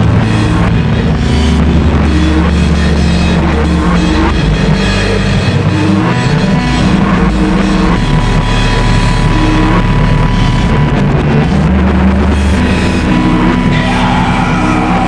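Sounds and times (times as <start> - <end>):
distorted noise wall: 0.0 - 15.0
low drones: 0.0 - 15.0
steady high tone: 12.6 - 15.0.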